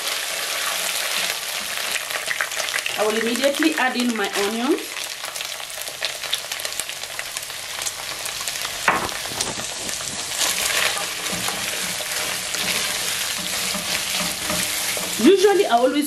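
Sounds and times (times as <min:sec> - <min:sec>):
onions sizzling in oil: 0:00.0 - 0:16.0
sharp knock: 0:08.9 - 0:10.3
spoon scraping a pot: 0:09.9 - 0:15.3.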